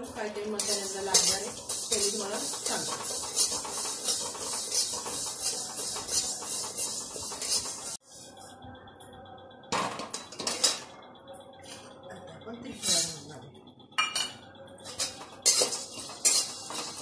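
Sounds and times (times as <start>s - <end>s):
spatula scraping spices in pan: 0.1s - 8.5s, 14.8s - 17.0s.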